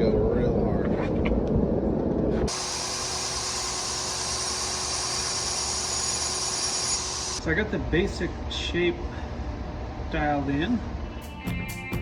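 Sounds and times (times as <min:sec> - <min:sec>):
grinder grinding steel: 0:02.5 - 0:07.4
faint motor hum: 0:02.5 - 0:11.4.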